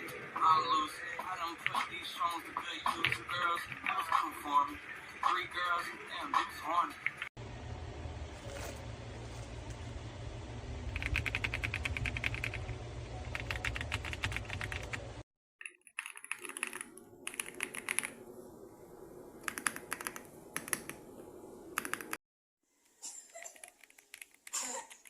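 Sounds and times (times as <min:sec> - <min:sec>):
mechanical keyboard typing: 0:11.0 - 0:12.7, 0:13.3 - 0:15.0, 0:15.6 - 0:18.2, 0:19.4 - 0:21.0, 0:21.8 - 0:22.2, 0:23.4 - 0:25.0.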